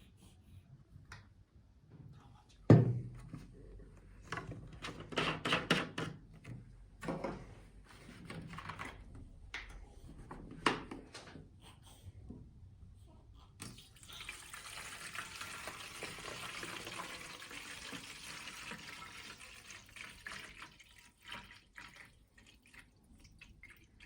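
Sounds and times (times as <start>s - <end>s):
knock: 2.7s - 3.2s.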